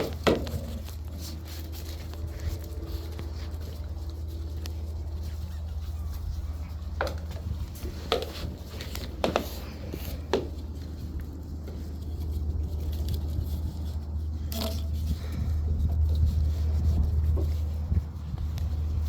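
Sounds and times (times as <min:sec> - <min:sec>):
steady low hum: 0:00.0 - 0:19.0
puppy paws tapping on hard floor: 0:06.7 - 0:11.4.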